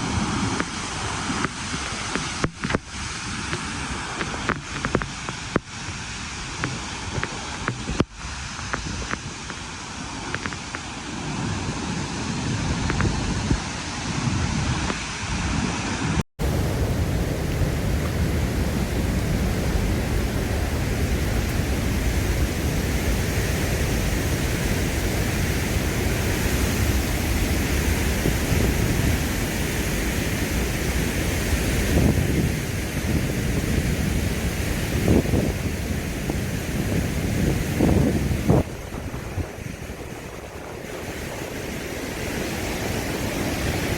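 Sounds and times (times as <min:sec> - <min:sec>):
wind buffeting the microphone: 0:00.0 - 0:43.9
river water rushing: 0:16.4 - 0:43.9.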